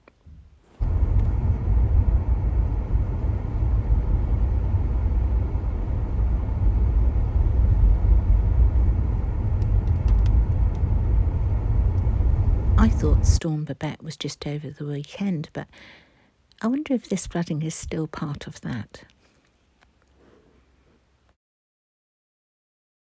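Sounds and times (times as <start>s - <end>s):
car road and engine rumble: 0.8s - 13.4s.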